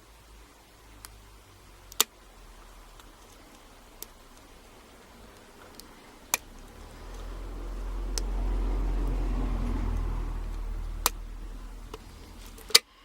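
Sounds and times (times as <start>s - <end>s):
low rumble: 0.9s - 12.8s.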